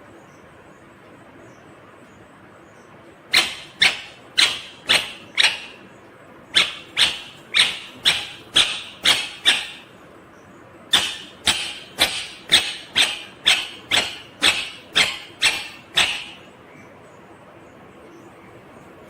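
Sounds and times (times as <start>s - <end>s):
parrot screeching: 3.3s - 5.8s, 6.5s - 9.9s, 10.9s - 16.5s.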